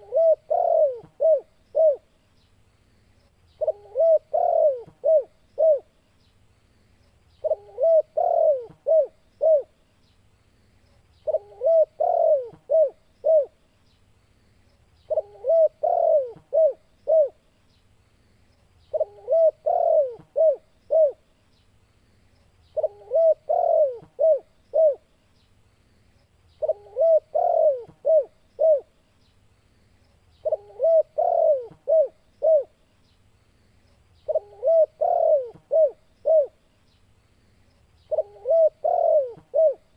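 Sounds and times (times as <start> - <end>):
dove cooing: 0.0 - 2.1, 3.6 - 5.9, 7.4 - 9.8, 11.2 - 13.6, 15.1 - 17.4, 18.9 - 21.2, 22.8 - 25.1, 26.6 - 28.9, 30.4 - 32.8, 34.2 - 36.6, 38.1 - 39.9.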